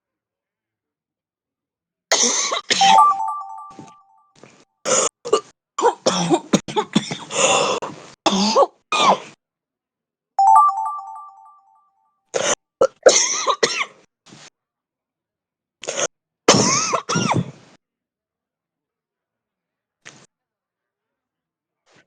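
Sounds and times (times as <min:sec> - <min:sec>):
ringing chime tone: 0:02.8 - 0:04.2, 0:10.4 - 0:11.8.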